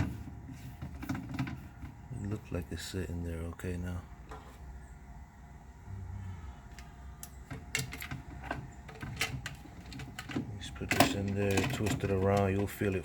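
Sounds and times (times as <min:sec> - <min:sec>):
plastic parts clicking and knocking: 0:06.7 - 0:13.0.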